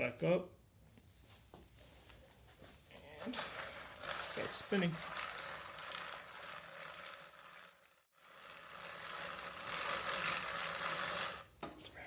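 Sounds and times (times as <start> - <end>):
bicycle chain whirring rattle: 3.2 - 11.6.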